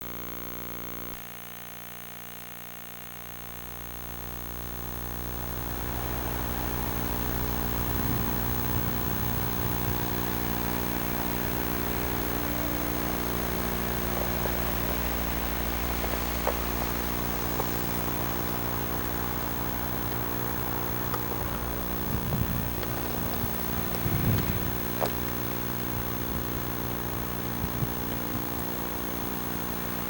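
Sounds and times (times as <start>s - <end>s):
electrical buzz: 0.0s - 30.0s
rushing background noise: 11.0s - 28.1s.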